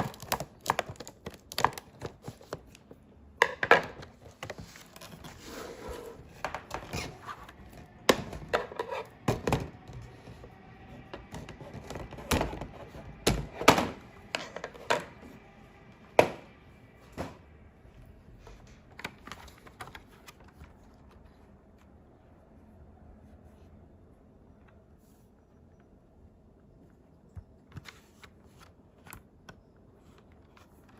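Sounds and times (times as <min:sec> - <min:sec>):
plastic and cardboard packaging handled: 0:00.0 - 0:15.2, 0:18.4 - 0:21.9.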